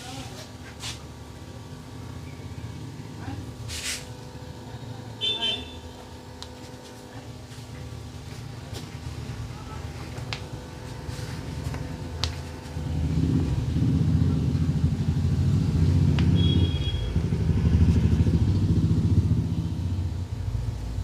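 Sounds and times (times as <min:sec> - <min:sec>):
vehicle engine running: 0:07.9 - 0:21.0
brief high beep: 0:16.4 - 0:17.1.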